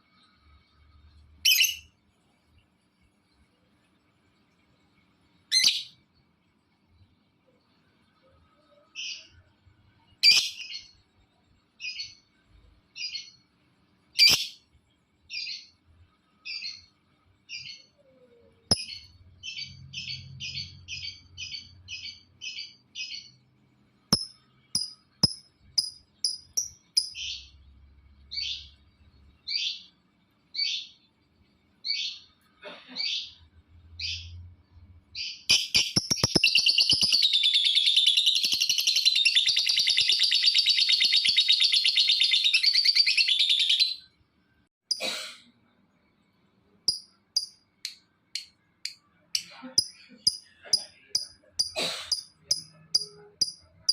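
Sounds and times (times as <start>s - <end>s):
lovebird chirping: 1.4s - 1.9s, 5.5s - 6.0s, 8.6s - 11.0s, 12.9s - 13.5s, 14.1s - 14.7s, 16.4s - 23.4s, 24.1s - 31.0s, 35.2s - 44.1s, 46.9s - 53.9s.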